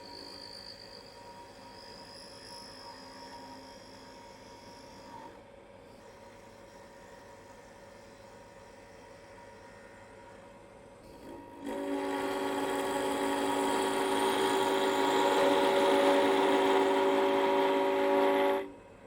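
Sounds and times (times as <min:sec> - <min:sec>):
wood lathe cutting whine: 0:11.2 - 0:18.8.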